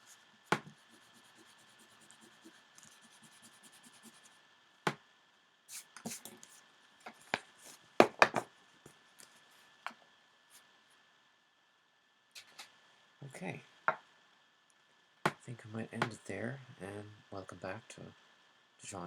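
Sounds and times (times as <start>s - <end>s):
eraser rubbing on paper: 0.0s - 4.3s, 5.7s - 6.5s
pens tapping on a desk: 8.0s - 8.5s.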